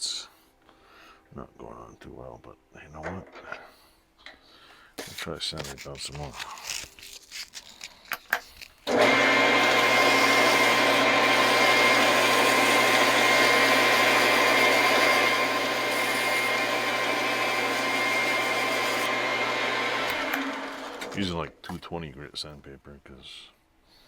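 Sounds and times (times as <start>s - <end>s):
lathe motor running: 8.9s - 21.2s
sandpaper sanding spinning metal: 9.0s - 19.1s.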